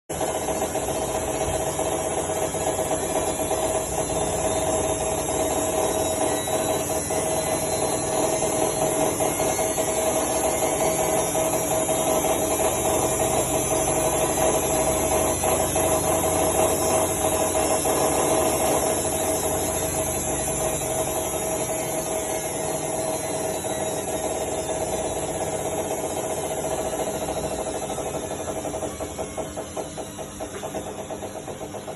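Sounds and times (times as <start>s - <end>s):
washing machine whine: 0.1s - 31.9s
washing machine rattling and knocking: 24.3s - 31.9s.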